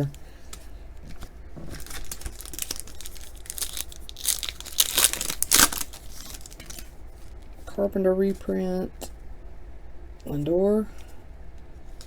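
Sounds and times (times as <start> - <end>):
foil wrapper tearing and crinkling: 1.7 - 6.9.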